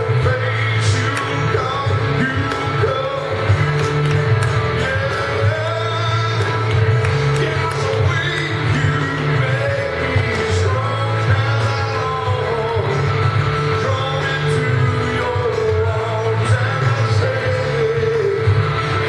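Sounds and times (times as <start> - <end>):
people singing: 0.0 - 13.1, 13.7 - 19.0
band playing worship song: 0.0 - 19.0.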